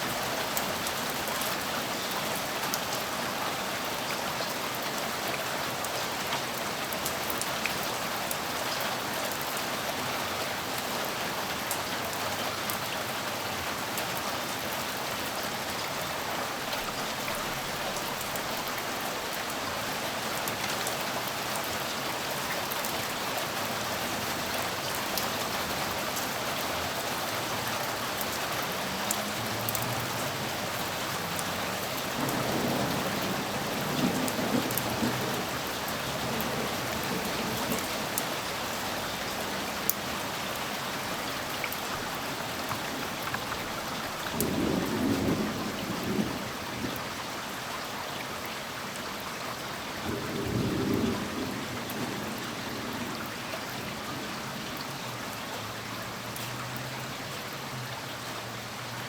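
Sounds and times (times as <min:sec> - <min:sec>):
heavy rain pattering: 0:00.0 - 0:59.0
distant thunder rumbling: 0:30.4 - 0:38.2, 0:43.4 - 0:47.0, 0:50.1 - 0:54.4.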